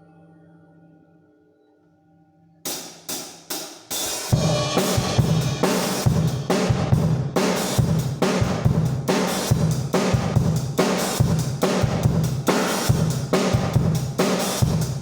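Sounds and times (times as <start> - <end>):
ringing cymbals: 0.0 - 6.8
drum kit playing: 2.7 - 15.0.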